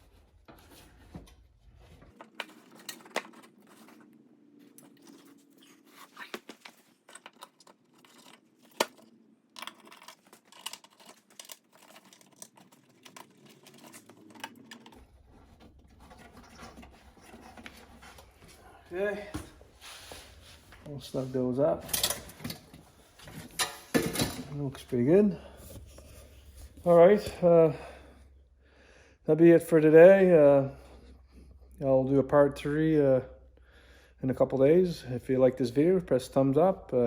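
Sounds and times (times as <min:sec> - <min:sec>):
parts clicking and scraping: 0:00.4 - 0:18.6, 0:21.8 - 0:24.9.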